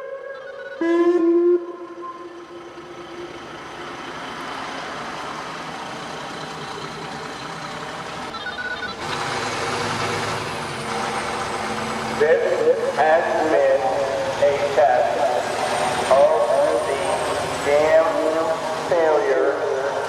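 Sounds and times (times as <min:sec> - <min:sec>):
electronic siren whoop: 0:00.0 - 0:03.4
traffic noise: 0:00.0 - 0:20.0.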